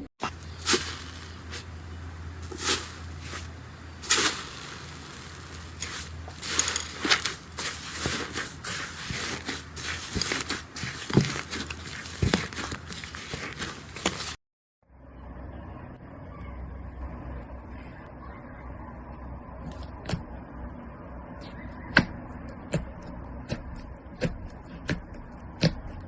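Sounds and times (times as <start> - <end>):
low steady hum: 0.2 - 14.4.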